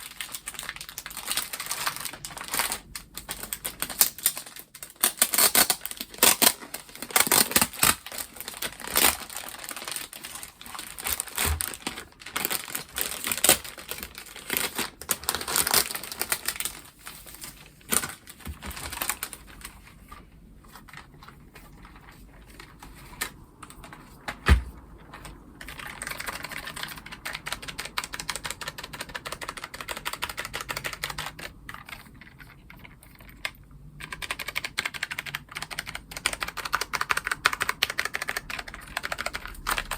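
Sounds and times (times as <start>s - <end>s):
mechanical keyboard typing clicks: 25.0s - 39.9s.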